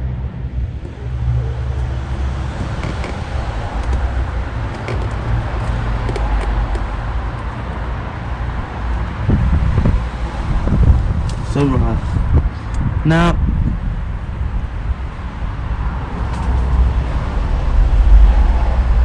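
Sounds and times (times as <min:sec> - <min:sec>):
vehicle engine rumbling: 0:00.0 - 0:19.0.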